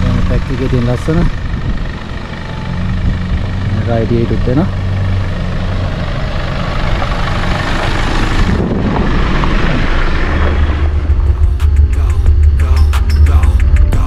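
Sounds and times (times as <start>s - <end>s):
off-road vehicle engine running: 0.0s - 14.0s
heavy low beat: 10.4s - 14.0s.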